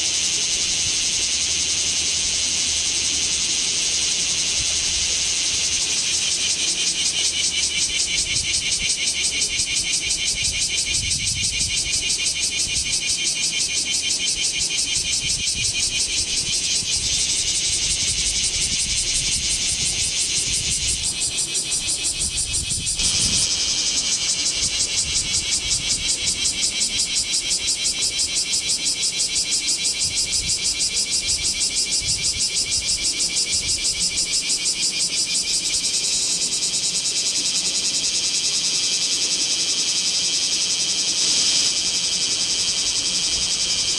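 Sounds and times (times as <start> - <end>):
cicadas shrill chorus: 0.0 - 43.9.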